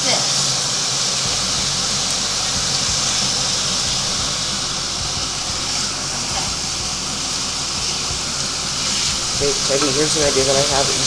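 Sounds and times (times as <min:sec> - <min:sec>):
meat and onions sizzling in pan: 0:00.0 - 0:11.0.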